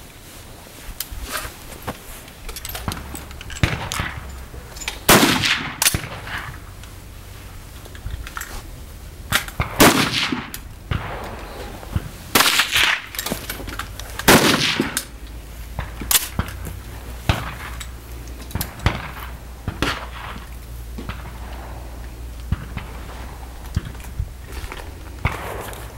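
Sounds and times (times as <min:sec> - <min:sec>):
light metallic clicks: 0:02.2 - 0:06.2
rifle shots echoing: 0:02.8 - 0:06.8, 0:09.3 - 0:25.9.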